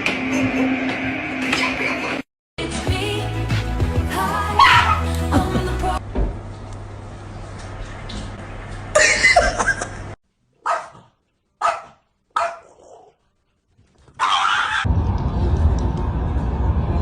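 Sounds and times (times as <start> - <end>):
dog barking: 4.6 - 5.0, 10.6 - 13.2, 14.2 - 14.9.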